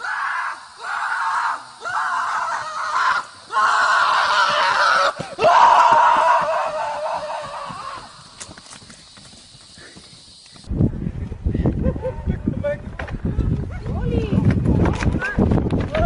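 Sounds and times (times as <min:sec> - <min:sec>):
long loud screams: 0:00.0 - 0:08.3.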